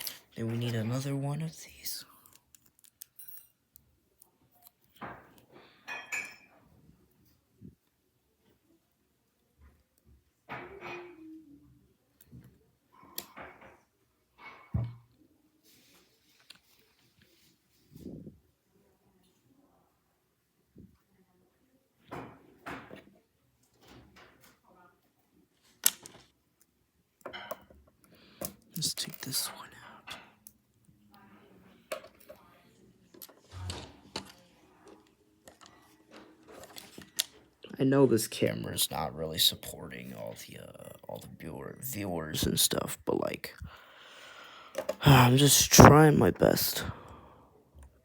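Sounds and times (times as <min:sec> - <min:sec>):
plastic pieces rustling and clicking: 0:02.2 - 0:03.4.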